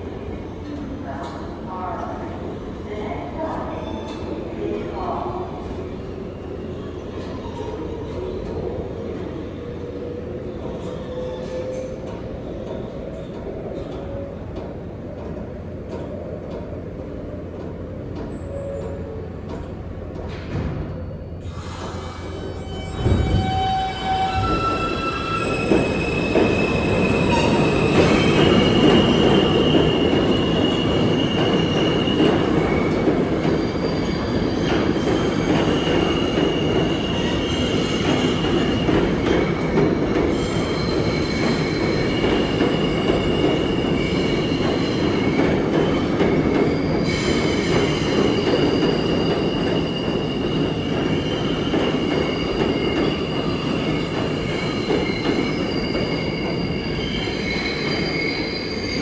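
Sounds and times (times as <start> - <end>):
subway train rumbling on track: 0.0 - 59.0
steel wheels squealing: 21.0 - 39.4, 40.3 - 59.0.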